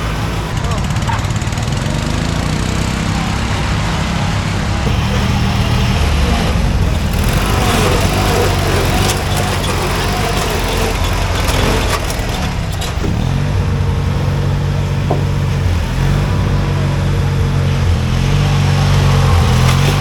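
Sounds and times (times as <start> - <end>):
riding lawn mower engines revving: 0.0 - 20.0
clatters and knocks: 4.9 - 16.9, 19.0 - 20.0.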